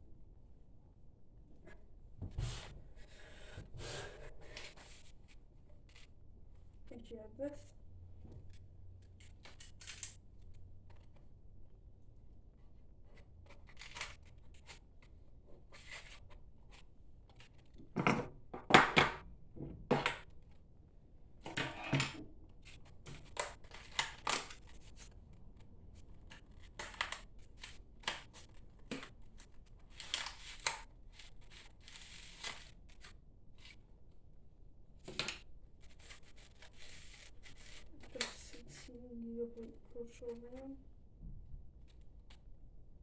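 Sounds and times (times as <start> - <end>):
objects rustling and knocking: 17.7 - 20.2.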